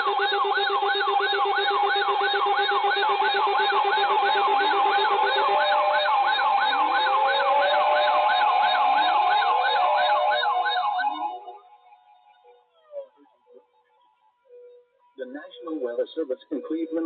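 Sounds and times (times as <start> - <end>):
electronic siren yelping: 0.0 - 13.3.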